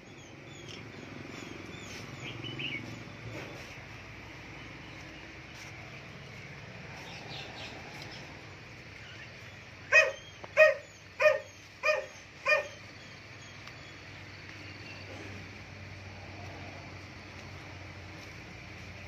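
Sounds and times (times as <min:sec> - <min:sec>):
dog barking: 0:09.9 - 0:12.8.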